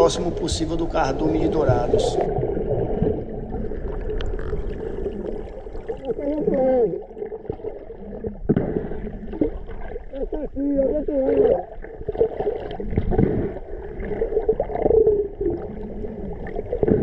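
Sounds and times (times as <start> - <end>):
muffled underwater water rush: 0.0 - 17.0.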